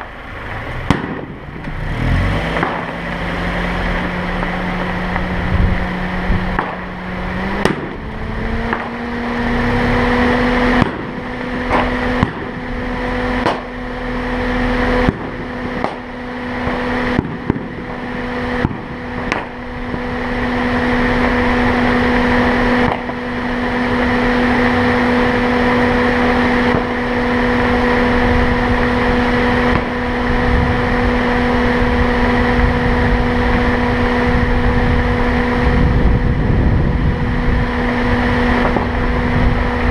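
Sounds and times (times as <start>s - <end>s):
car engine hum: 0.0s - 39.9s
road noise: 0.0s - 39.9s
sharp cracks or knocks: 0.9s - 1.8s, 2.5s - 3.3s, 6.5s - 6.9s, 8.7s - 9.0s, 10.8s - 12.5s.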